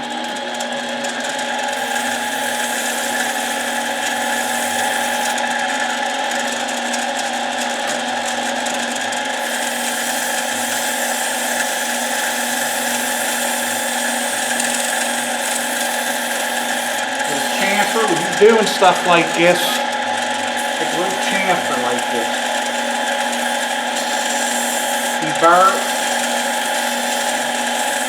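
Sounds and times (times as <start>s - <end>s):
lathe motor whine: 0.0s - 28.0s
sandpaper sanding hiss: 1.8s - 5.4s, 9.4s - 18.4s, 20.6s - 28.0s.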